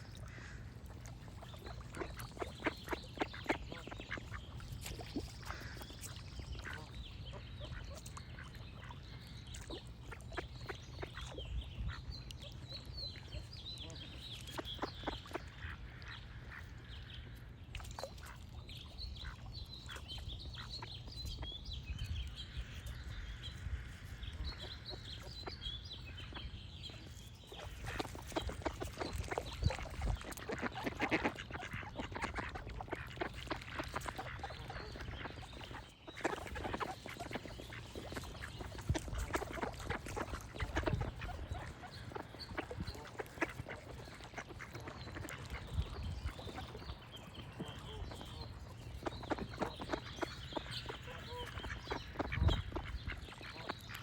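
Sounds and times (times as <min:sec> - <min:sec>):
small birds chirping: 0:00.0 - 0:54.0
ducks quacking: 0:00.2 - 0:07.0, 0:27.6 - 0:54.0.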